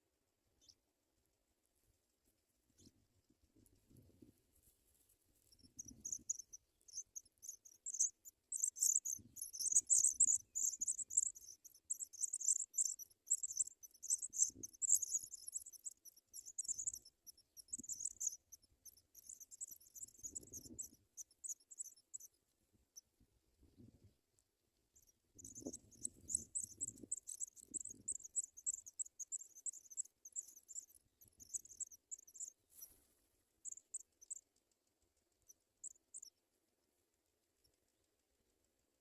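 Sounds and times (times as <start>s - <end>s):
nestlings chirping: 5.4s - 22.4s, 25.0s - 33.0s, 33.6s - 34.4s, 35.4s - 36.4s.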